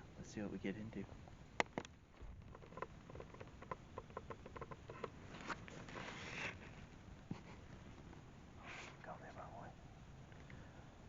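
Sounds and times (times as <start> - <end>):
light clicks and rustling: 1.6 - 8.2.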